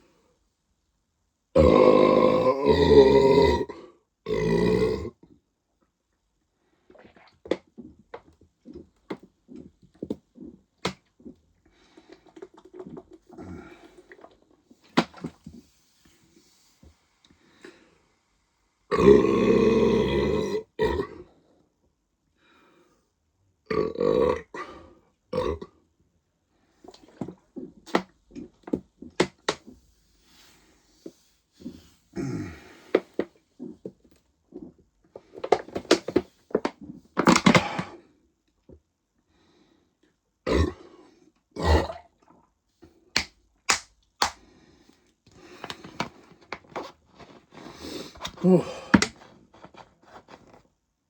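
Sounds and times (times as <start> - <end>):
man burping: 1.6 - 5.2, 18.9 - 21.2, 23.7 - 25.7, 32.2 - 32.8, 37.3 - 38.0, 40.5 - 40.8, 41.6 - 42.1, 48.2 - 49.1.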